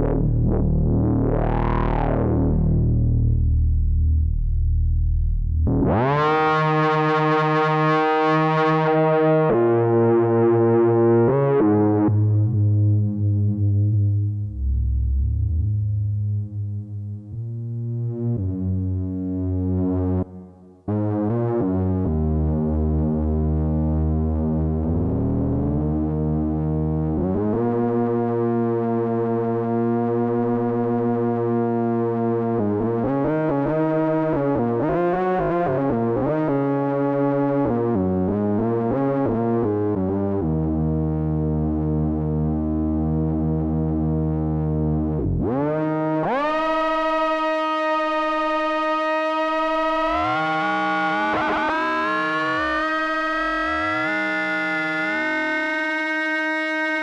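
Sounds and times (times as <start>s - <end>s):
analog synthesizer notes gliding: 0.0s - 20.2s, 20.9s - 57.0s
synthesizer line sweeping in pitch: 45.5s - 57.0s.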